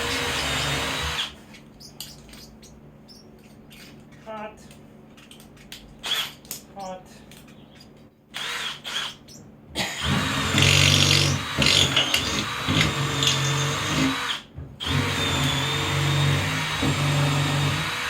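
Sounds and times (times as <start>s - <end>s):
power drill driving screws into wood: 0.0s - 1.4s, 8.3s - 9.2s, 9.9s - 18.0s.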